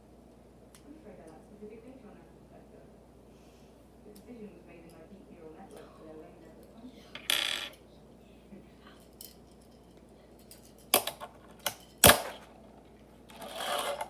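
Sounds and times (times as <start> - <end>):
small parts scraping: 7.2 - 7.8, 13.3 - 14.0.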